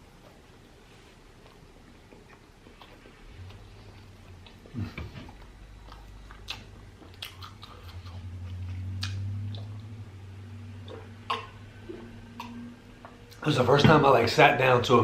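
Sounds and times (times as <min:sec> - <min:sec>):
chewing and biting food: 0:00.1 - 0:10.0, 0:10.8 - 0:13.4
low hum: 0:03.0 - 0:14.2
wet mouth clicks: 0:04.9 - 0:08.3, 0:08.9 - 0:09.8, 0:10.8 - 0:11.6, 0:12.4 - 0:13.2.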